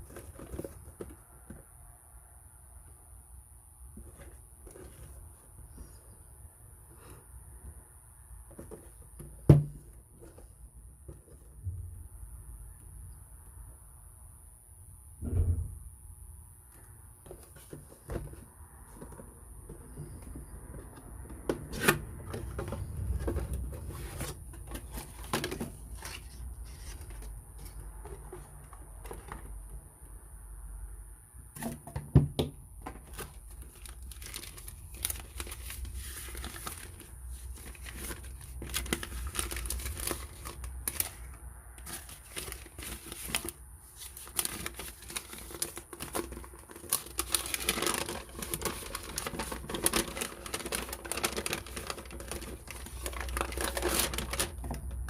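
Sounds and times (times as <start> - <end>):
packaging crinkling and tearing: 32.9 - 55.0.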